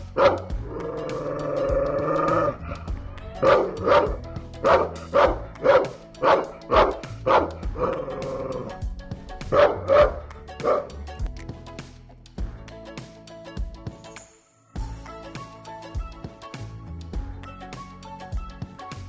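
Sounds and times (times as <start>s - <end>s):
background music: 0.0s - 19.0s
dog barking: 0.2s - 0.5s, 3.4s - 8.0s, 9.5s - 10.9s.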